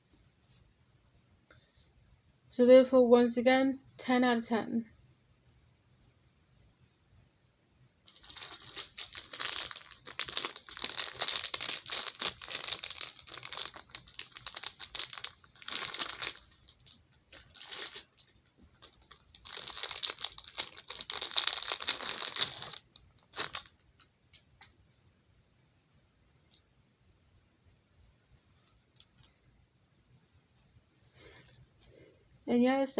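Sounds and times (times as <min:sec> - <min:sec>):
plastic tubes crinkling: 0:08.1 - 0:24.8.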